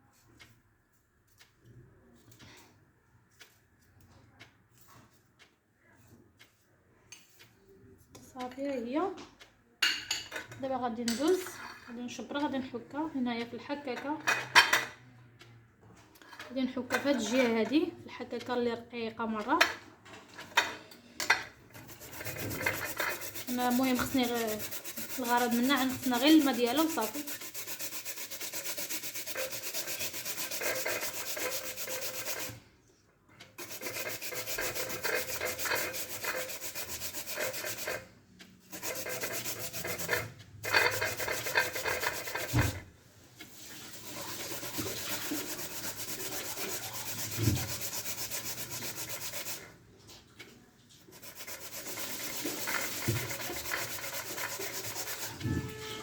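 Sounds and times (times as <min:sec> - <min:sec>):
turnip grated on a grater: 0:21.7 - 0:32.6, 0:33.6 - 0:38.1, 0:38.7 - 0:42.8, 0:43.4 - 0:49.7, 0:51.0 - 0:55.9.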